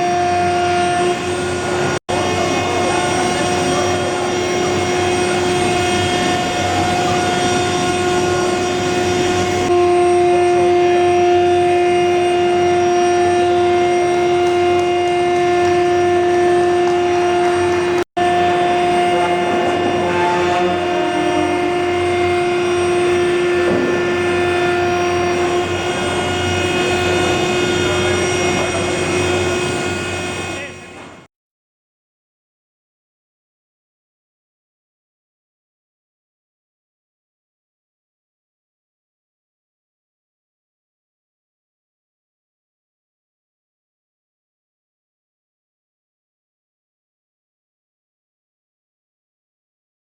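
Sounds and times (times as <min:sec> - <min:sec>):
constant whining tones: 0:00.0 - 0:31.3
furnace roaring: 0:00.0 - 0:31.3
low hum: 0:00.0 - 0:31.3
furnace roaring with droning hum: 0:16.8 - 0:31.2.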